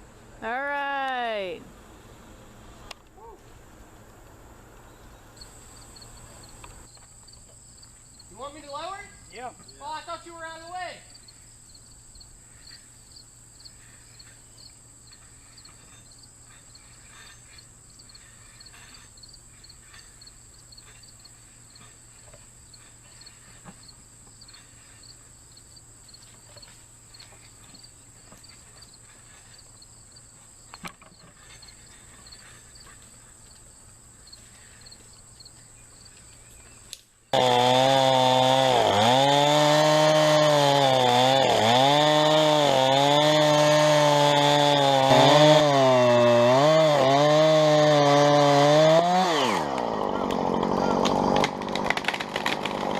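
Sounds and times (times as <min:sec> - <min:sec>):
crickets chirping: 0:04.8 - 0:37.2
chainsaw cutting wood: 0:37.3 - 0:52.9.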